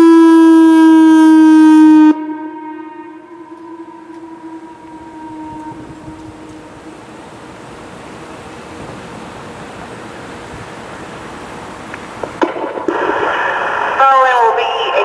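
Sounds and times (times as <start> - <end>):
electronic warning siren tone: 0.0 - 7.8
loudspeaker clicks: 11.9 - 15.0.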